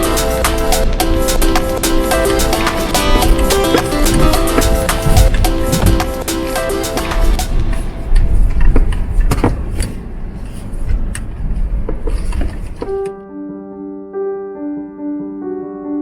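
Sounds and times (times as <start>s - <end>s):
soft piano notes: 0.0s - 7.8s, 12.8s - 16.0s
noisy music with clicks and rumble: 0.0s - 10.0s.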